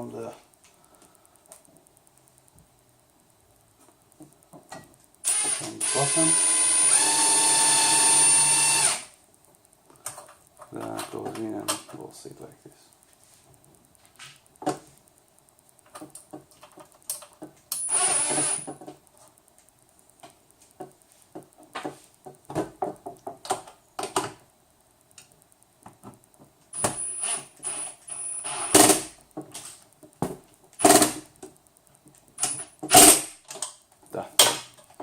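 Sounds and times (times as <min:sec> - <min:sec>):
power screwdriver whining: 0:05.2 - 0:09.1, 0:17.8 - 0:18.7
clicks and taps of parts: 0:15.7 - 0:17.8, 0:28.8 - 0:35.0.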